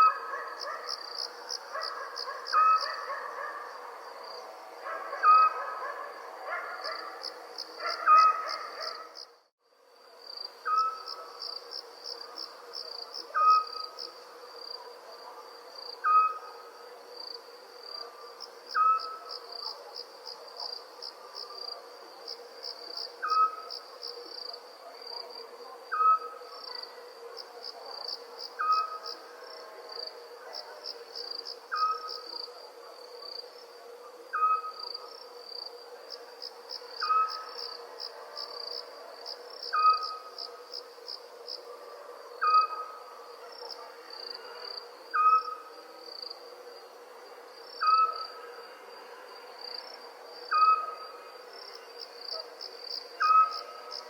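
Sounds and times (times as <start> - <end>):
crickets chirping: 0.0 - 54.0
owl call: 44.0 - 45.7.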